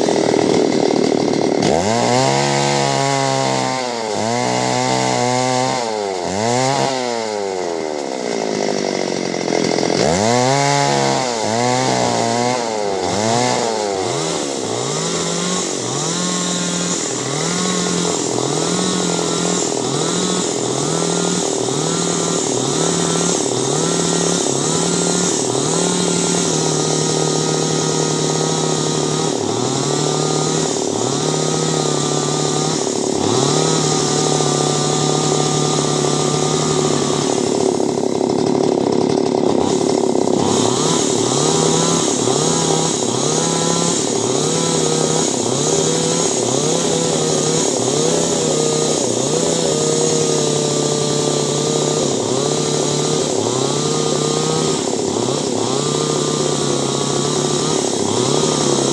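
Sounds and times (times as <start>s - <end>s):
chainsaw revving and cutting wood: 0.0s - 58.9s.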